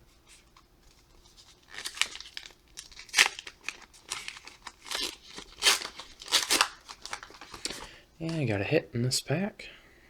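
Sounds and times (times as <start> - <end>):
card pack wrapper tearing and crinkling: 1.2 - 8.4.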